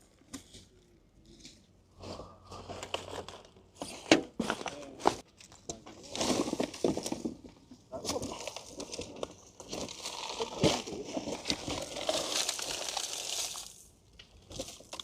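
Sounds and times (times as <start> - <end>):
rubbish rustling and crinkling: 2.1 - 15.0.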